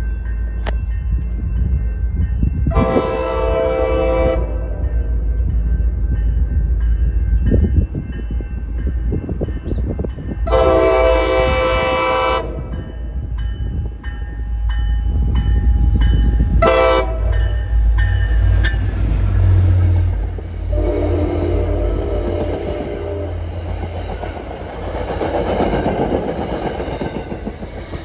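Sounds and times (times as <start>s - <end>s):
low rumble of moving train: 0.0s - 28.0s
train air horn blasts: 2.7s - 4.9s, 10.5s - 12.7s, 16.6s - 17.5s, 20.6s - 23.6s.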